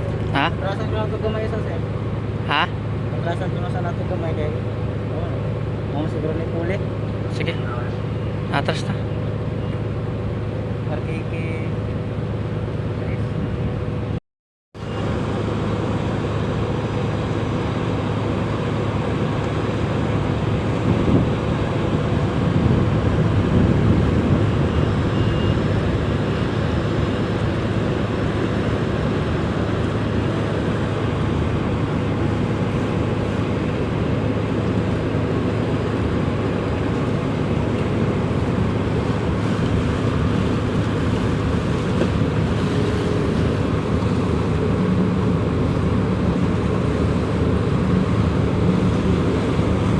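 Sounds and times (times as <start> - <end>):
marine diesel engine droning: 0.0 - 14.2, 14.8 - 49.9
wind on microphone: 20.1 - 34.6.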